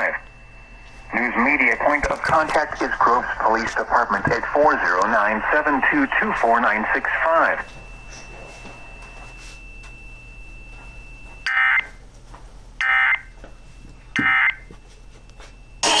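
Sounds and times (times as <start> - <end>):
radio hiss: 0.0 - 7.7.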